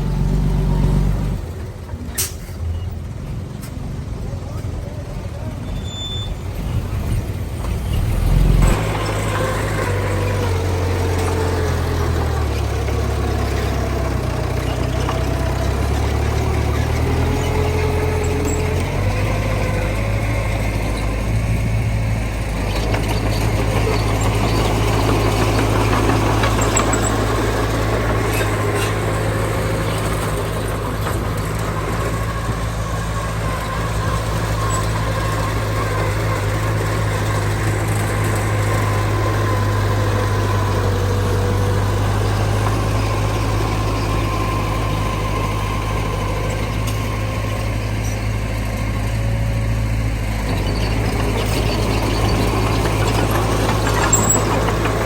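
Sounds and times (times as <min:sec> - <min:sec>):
heavy diesel engines running: 0:00.0 - 0:55.0.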